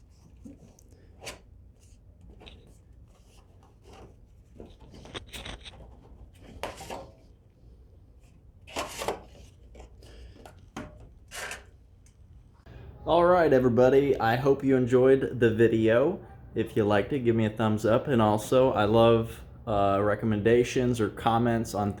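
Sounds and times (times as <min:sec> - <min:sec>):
metal flashing scraping and rubbing: 0:04.8 - 0:06.0.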